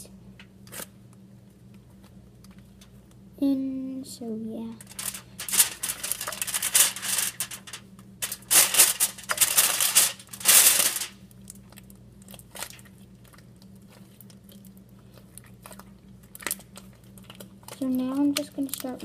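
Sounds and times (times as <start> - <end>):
material crinkling and tearing: 4.8 - 13.4.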